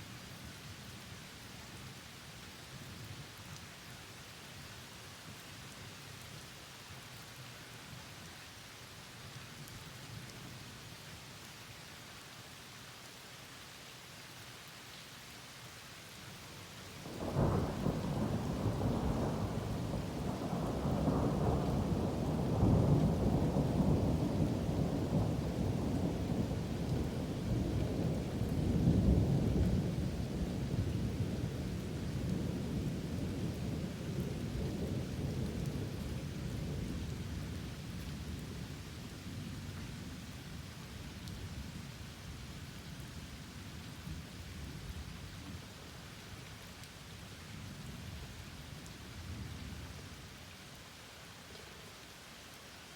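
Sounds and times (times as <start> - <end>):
steady rain: 0.0 - 52.9
thunder crack and rolling rumble: 17.1 - 37.6.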